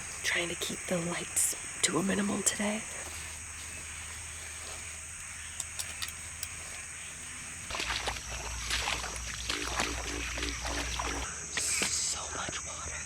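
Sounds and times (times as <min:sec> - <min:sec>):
footsteps squelching on wet ground: 0:01.6 - 0:11.3
faint ticks: 0:02.5 - 0:07.4.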